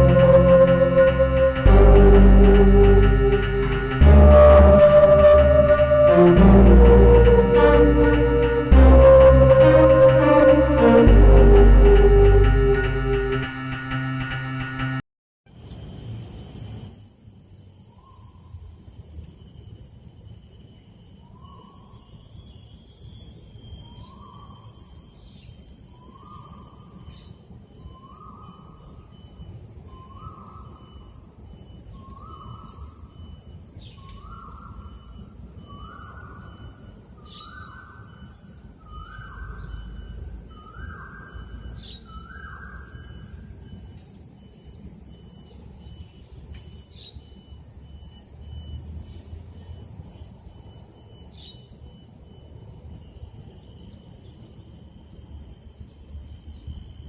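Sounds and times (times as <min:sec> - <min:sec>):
low rumble: 0:00.0 - 0:14.6
pulsing high chirp: 0:00.0 - 0:15.0
birds twittering: 0:23.9 - 0:57.0.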